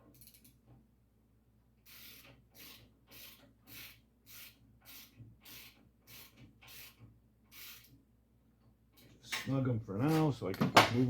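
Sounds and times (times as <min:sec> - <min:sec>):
ratchet wrench ratcheting: 0:00.1 - 0:00.6, 0:01.9 - 0:07.9.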